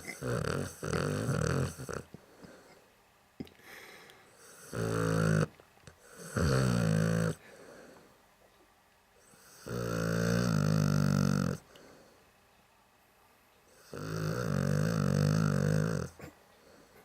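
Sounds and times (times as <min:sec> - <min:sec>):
dog snoring loudly: 0:00.0 - 0:02.1, 0:04.4 - 0:07.4, 0:09.2 - 0:11.6, 0:13.7 - 0:16.3
quiet dog breathing: 0:03.6 - 0:08.2, 0:10.8 - 0:12.4, 0:15.0 - 0:17.0.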